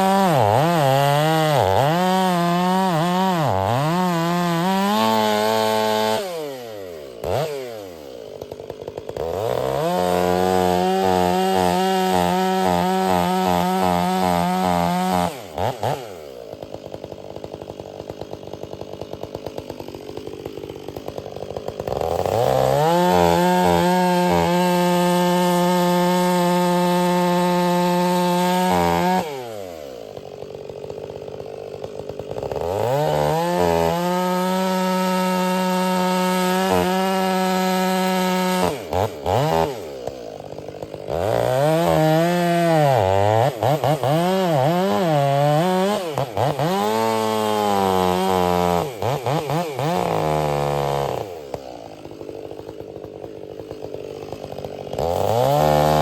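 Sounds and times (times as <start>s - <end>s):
chainsaw cutting logs: 0.0s - 56.0s
chainsaw idling: 0.0s - 56.0s.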